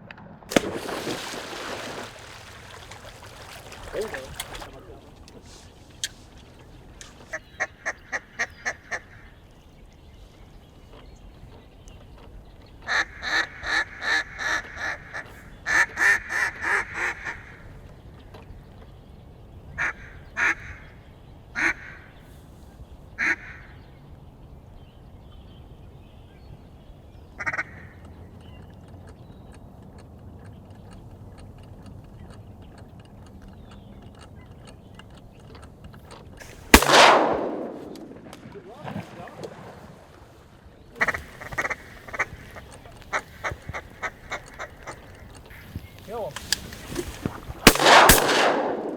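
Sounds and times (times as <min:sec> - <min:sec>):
shotgun shot: 0:00.5 - 0:01.2, 0:36.4 - 0:38.6, 0:47.6 - 0:48.9
duck quacking: 0:41.0 - 0:45.0.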